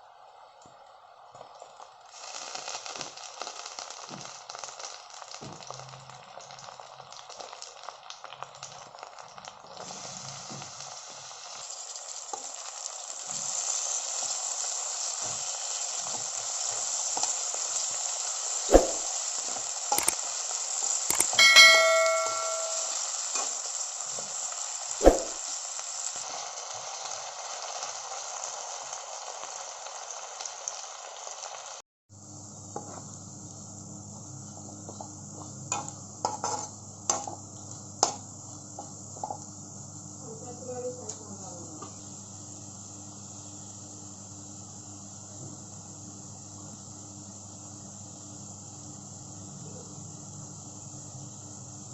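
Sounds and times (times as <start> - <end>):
food sizzling in oil: 0.9 - 51.9
ringing metallic clang: 21.1 - 23.0.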